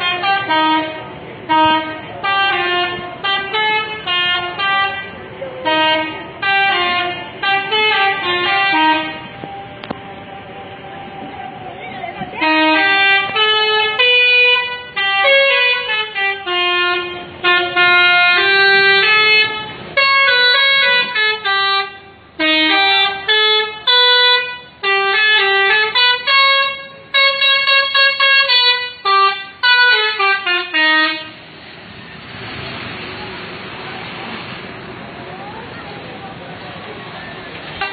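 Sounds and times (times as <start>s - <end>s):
bus multi-tone air horn melody: 0.0s - 10.0s, 12.4s - 31.6s.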